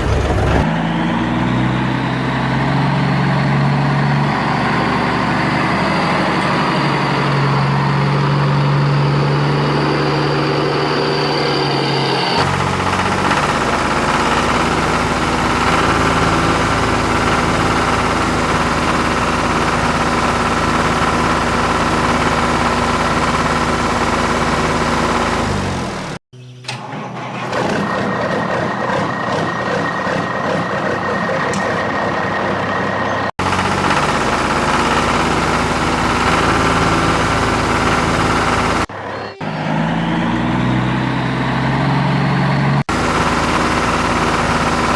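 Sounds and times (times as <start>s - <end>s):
engine idling: 12.4s - 44.9s.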